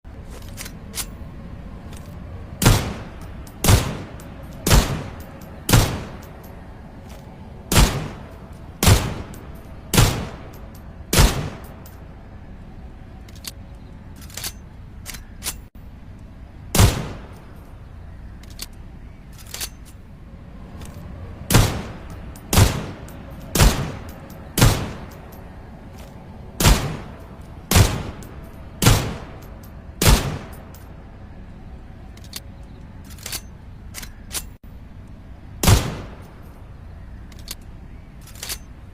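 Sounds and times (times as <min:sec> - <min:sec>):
pistol shots with ringing tail: 0:02.6 - 0:06.3, 0:07.7 - 0:08.2, 0:08.8 - 0:12.0, 0:16.8 - 0:17.4, 0:21.5 - 0:25.2, 0:26.6 - 0:30.8, 0:35.6 - 0:36.3.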